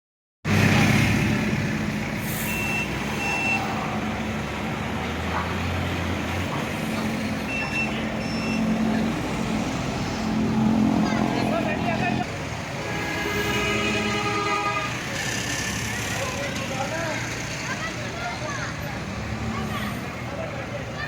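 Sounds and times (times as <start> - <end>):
short high beeps: 2.5 - 3.7, 7.5 - 8.8.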